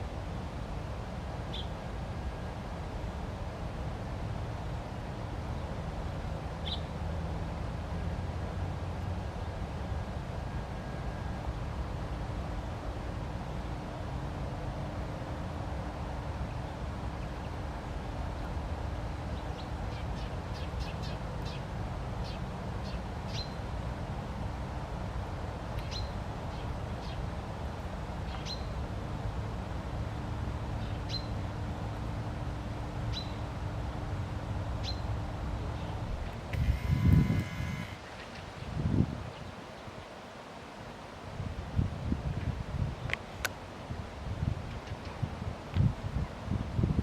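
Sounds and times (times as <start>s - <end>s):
faint hum: 33.3s - 39.5s.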